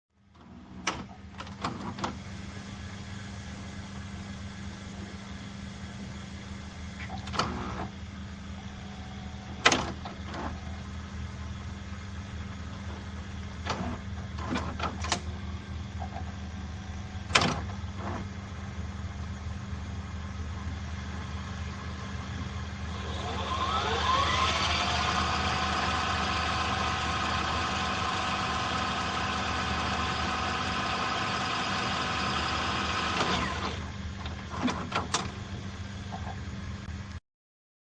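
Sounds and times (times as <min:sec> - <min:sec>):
low mechanical hum: 0:00.2 - 0:37.2
mechanism clicks and clunks: 0:00.4 - 0:02.2, 0:07.0 - 0:08.0, 0:09.6 - 0:10.6, 0:12.8 - 0:15.4, 0:17.3 - 0:18.3, 0:33.2 - 0:35.5
motor whining and whirring: 0:07.0 - 0:08.0, 0:08.6 - 0:10.9, 0:12.7 - 0:18.4, 0:22.4 - 0:35.6.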